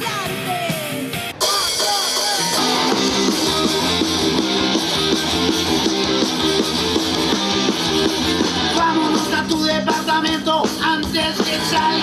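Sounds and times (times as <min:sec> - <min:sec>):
rock band instrumental: 0:00.0 - 0:12.0
electric guitar quick notes: 0:00.3 - 0:09.9.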